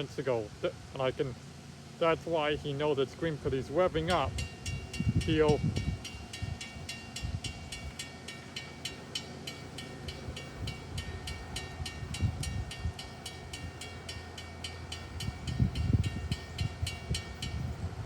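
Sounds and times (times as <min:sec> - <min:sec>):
diesel locomotive rumbling: 0:00.0 - 0:18.0
bell ringing rapidly: 0:04.3 - 0:17.8.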